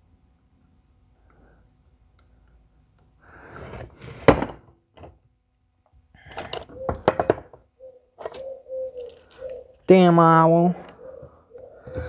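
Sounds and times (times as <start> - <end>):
knocks and clicks of metal tools: 6.3 - 7.6, 8.2 - 9.5.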